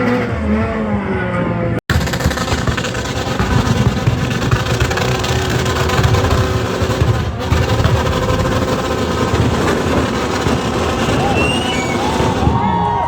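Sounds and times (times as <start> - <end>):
motorcycle engine running: 1.9 - 11.3.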